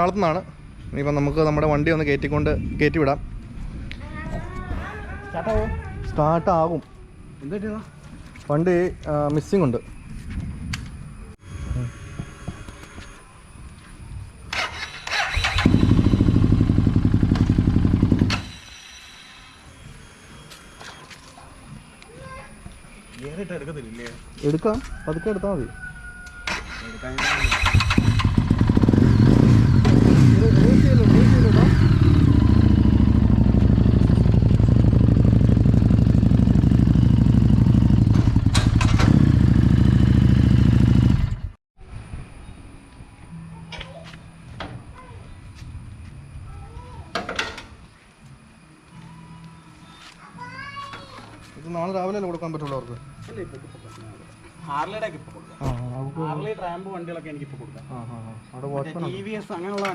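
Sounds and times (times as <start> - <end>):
motorcycle starter cranking: 14.5 - 18.6, 26.5 - 30.6, 38.1 - 39.8
motorcycle engine running: 15.3 - 18.4, 27.4 - 41.6.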